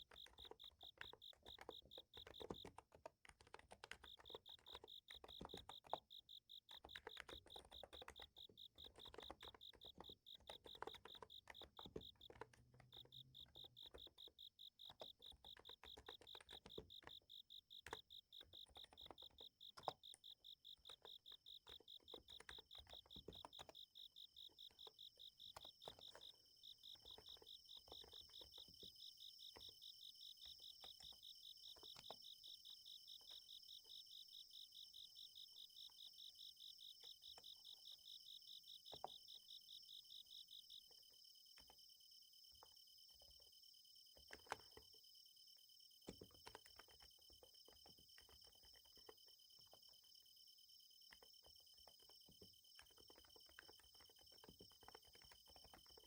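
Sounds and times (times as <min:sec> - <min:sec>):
soft keyboard keystrokes: 0:00.0 - 0:34.0, 0:44.2 - 0:45.0, 0:46.0 - 0:49.9, 0:51.1 - 0:56.0
insects trilling: 0:00.0 - 0:56.0.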